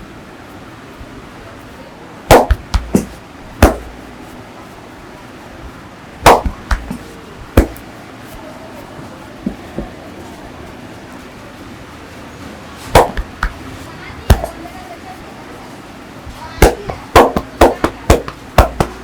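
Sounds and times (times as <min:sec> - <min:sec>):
hand slaps on body: 0:02.3 - 0:04.0, 0:06.2 - 0:07.8, 0:13.0 - 0:13.7, 0:16.6 - 0:19.0.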